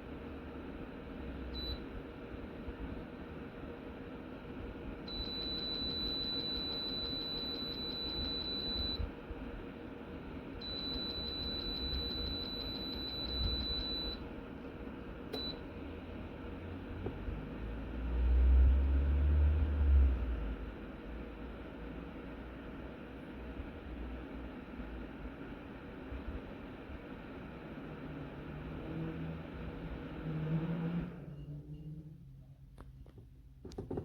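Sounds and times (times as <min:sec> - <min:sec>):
short beep: 0:10.6 - 0:14.2.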